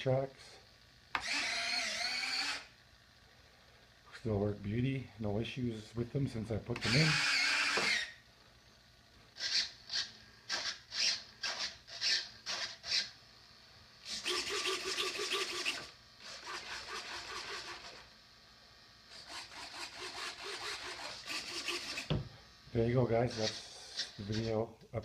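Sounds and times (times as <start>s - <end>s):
landing gear motor whirring: 1.2s - 2.7s.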